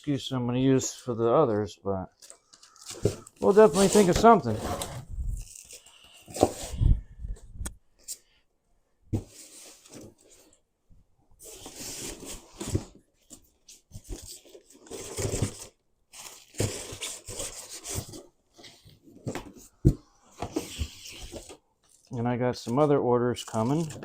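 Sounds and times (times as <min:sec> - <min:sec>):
packaging rustling: 0:02.1 - 0:06.8.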